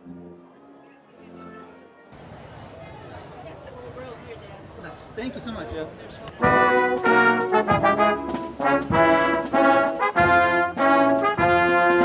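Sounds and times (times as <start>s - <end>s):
brass fanfare music: 6.4s - 12.0s.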